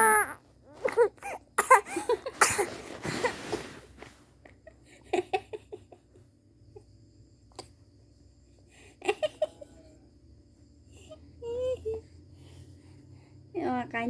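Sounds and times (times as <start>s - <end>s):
baby crying: 0.0s - 2.1s
baby coughing: 0.0s - 2.7s.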